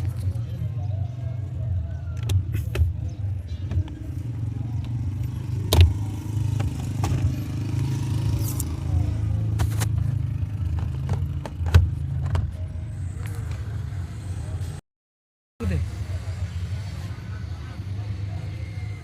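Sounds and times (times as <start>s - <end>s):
vehicle engine rumbling: 0.0s - 14.8s.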